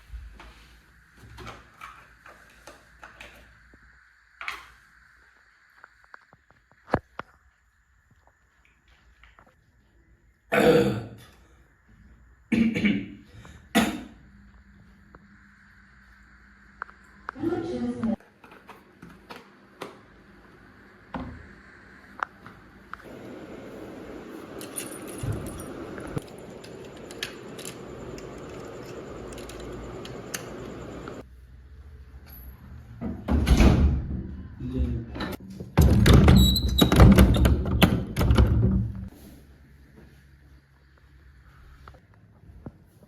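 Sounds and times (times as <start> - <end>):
person coughing: 10.5 - 11.2, 12.5 - 14.2
machinery noise: 20.6 - 31.3.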